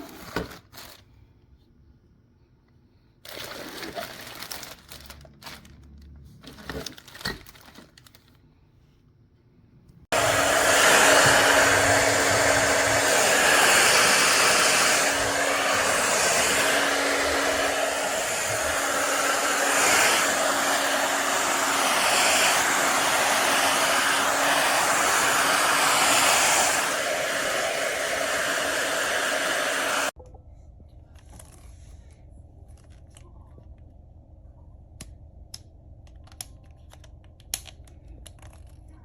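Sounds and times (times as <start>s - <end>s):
hair dryer blowing: 10.1s - 30.2s.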